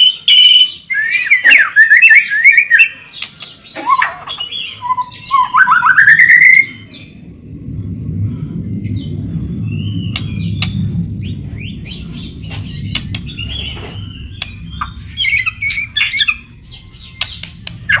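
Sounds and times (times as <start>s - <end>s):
songbird whistling and chirping: 0.0s - 7.2s, 8.8s - 18.0s
low rumble: 4.2s - 18.0s.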